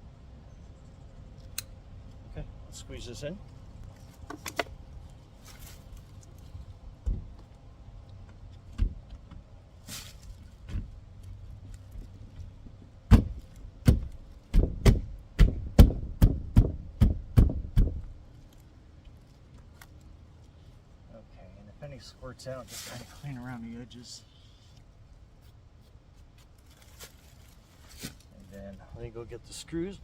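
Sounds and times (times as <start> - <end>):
knocking on window frame: 13.1 - 18.0.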